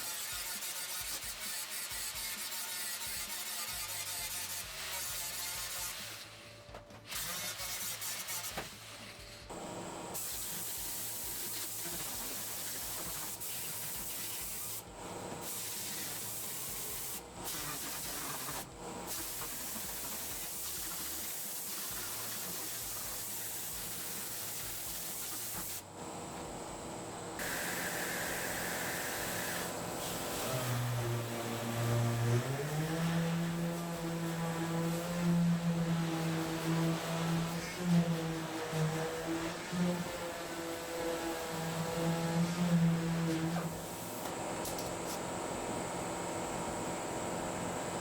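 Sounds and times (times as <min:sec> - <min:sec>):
power sanding metal panels: 0:19.2 - 0:45.8.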